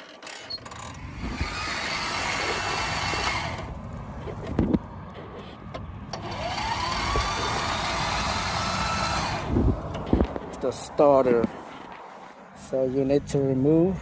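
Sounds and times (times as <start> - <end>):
electric starter whirring: 0.0 - 10.4
mower clunk: 0.1 - 8.4, 9.9 - 10.6.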